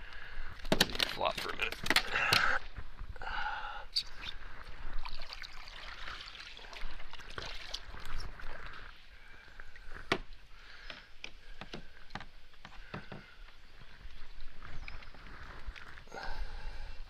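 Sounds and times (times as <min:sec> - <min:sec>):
water sloshing around kayak: 0:04.3 - 0:16.8.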